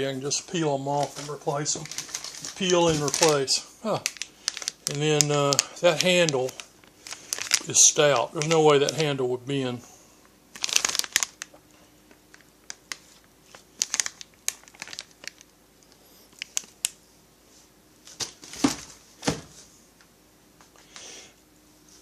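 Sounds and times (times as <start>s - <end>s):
packaging crinkling: 0.3s - 9.2s, 10.5s - 17.0s.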